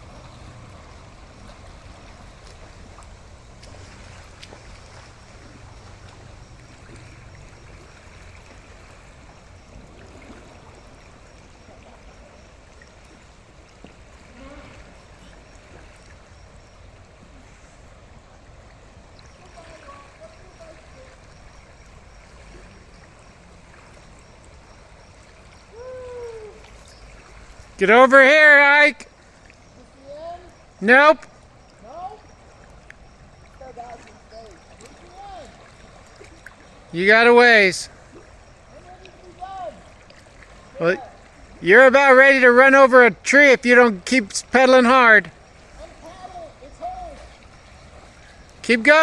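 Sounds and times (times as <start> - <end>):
river water rushing: 0.0 - 49.0
faint voice calling out: 25.7 - 26.6, 27.8 - 29.0, 29.8 - 31.2, 37.0 - 37.9, 40.8 - 47.3, 48.6 - 49.0.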